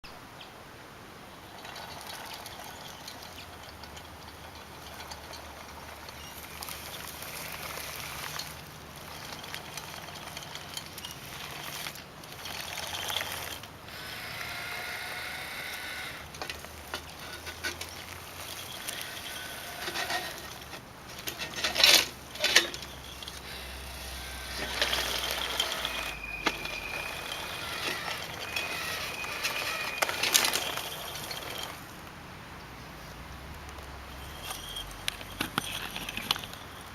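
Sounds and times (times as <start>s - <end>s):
small electric motors whining: 1.6s - 31.9s, 34.2s - 36.9s
sharp scraping knocks: 15.6s - 31.8s
tracks clicking and clattering: 15.6s - 31.9s.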